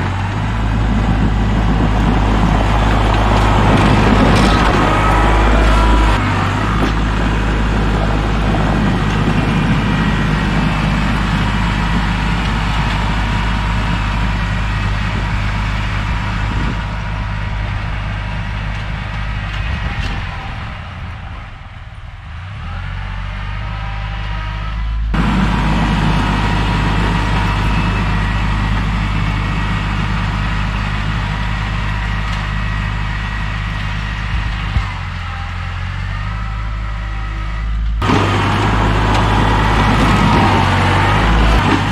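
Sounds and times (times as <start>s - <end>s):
tractor diesel engine running: 0.0s - 41.9s.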